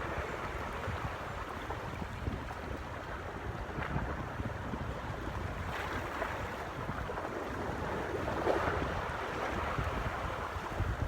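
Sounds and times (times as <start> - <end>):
wind rumbling on microphone: 0.0 - 11.0.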